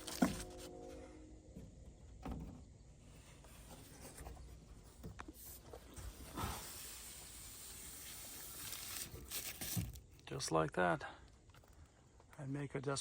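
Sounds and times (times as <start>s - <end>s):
roof panel scraping and rustling: 0.0s - 0.9s.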